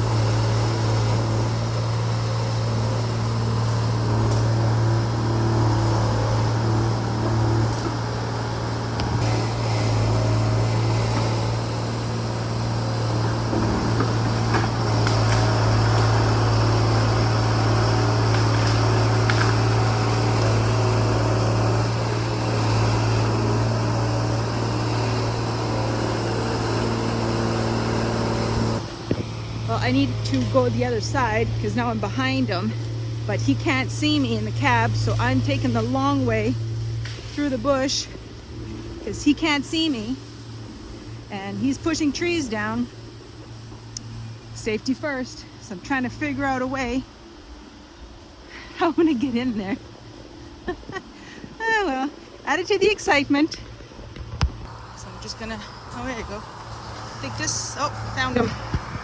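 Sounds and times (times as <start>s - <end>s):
excavator diesel engine running: 0.0s - 53.4s, 54.6s - 59.0s
faint sharp ticks: 43.9s - 44.1s.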